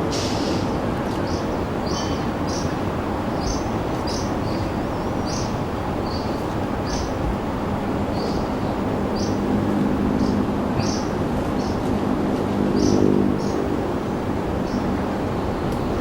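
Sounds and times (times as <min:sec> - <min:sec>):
helicopters flying overhead: 0:07.4 - 0:16.0.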